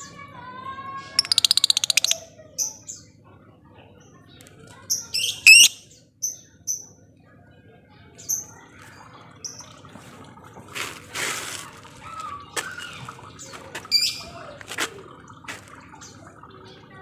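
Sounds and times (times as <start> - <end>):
lovebird chirps and clicking calls: 1.2 - 2.2, 5.2 - 5.8
lovebirds squawking: 1.2 - 2.2, 5.2 - 5.8.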